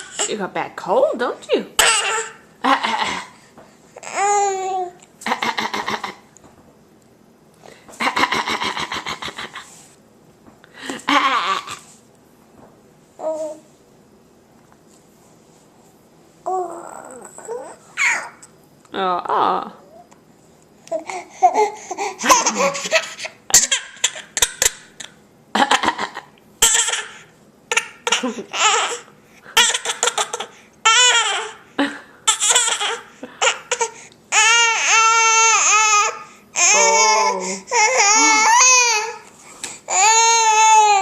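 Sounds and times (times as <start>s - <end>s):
baby coughing: 1.8s - 2.4s, 26.6s - 29.0s
baby crying: 1.8s - 2.4s, 16.5s - 18.4s, 21.0s - 23.2s, 26.6s - 31.6s, 32.3s - 39.2s, 39.9s - 41.0s
baby laughing and vocalising: 11.1s - 11.9s, 16.5s - 18.4s, 20.9s - 25.0s, 26.6s - 31.6s, 32.2s - 34.5s.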